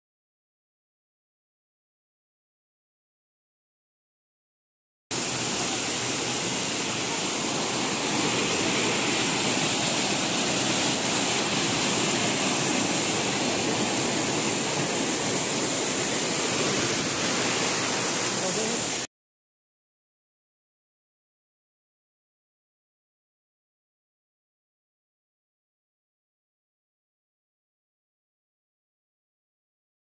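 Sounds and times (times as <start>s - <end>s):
waterfall hissing: 5.1s - 19.1s.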